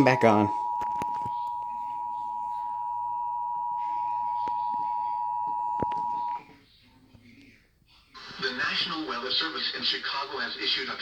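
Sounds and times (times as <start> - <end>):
two-tone attention signal: 0.0 - 6.4.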